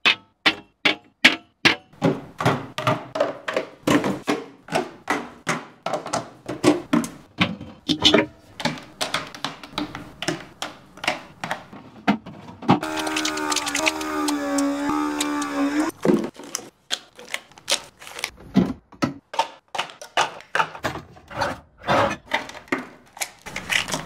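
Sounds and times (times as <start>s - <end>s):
items thunking and tapping when set down: 0.0s - 14.0s.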